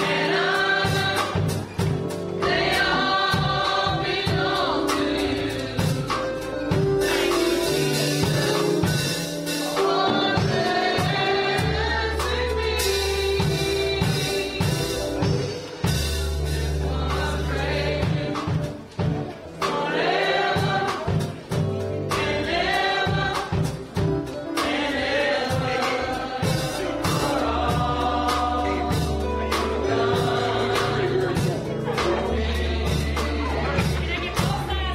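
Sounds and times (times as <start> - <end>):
bass notes: 0.0 - 34.9
drum beat: 0.0 - 34.9
gospel choir singing: 0.0 - 34.9.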